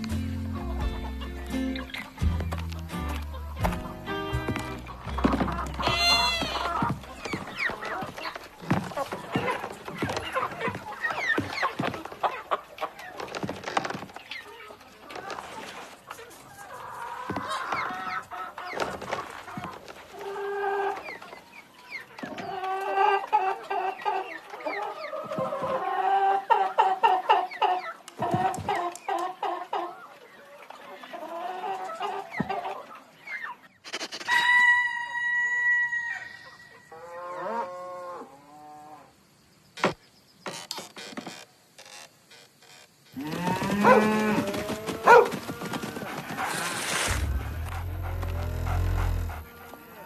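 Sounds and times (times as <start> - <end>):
fowl clucking: 0.6 - 13.0.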